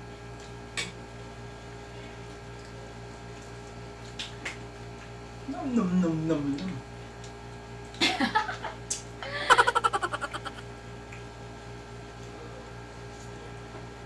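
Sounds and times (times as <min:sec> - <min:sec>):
low electrical hum: 0:00.0 - 0:14.0
person laughing: 0:09.2 - 0:10.6.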